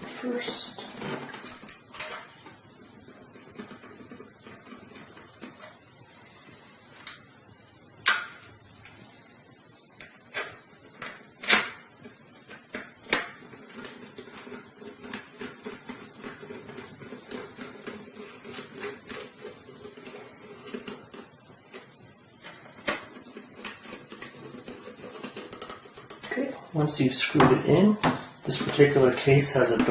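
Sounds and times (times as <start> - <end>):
screw ticking and scraping: 1.0 - 6.0, 10.0 - 26.3.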